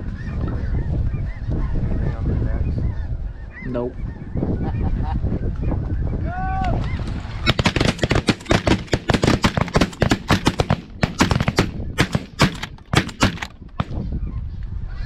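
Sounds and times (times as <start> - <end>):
shotgun fire: 7.5 - 14.0.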